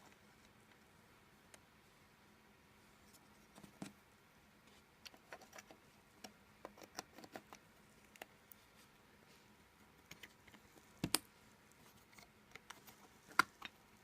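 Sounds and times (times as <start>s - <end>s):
quiet steady hum: 0.0s - 14.0s
small clicks and taps: 10.0s - 11.3s.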